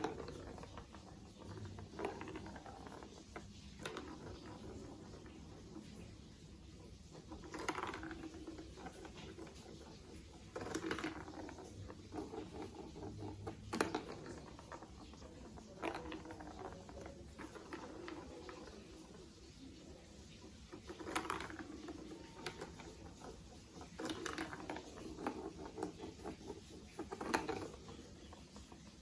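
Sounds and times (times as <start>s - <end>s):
plastic pieces clicking and rattling: 6.8s - 19.7s, 20.6s - 29.0s.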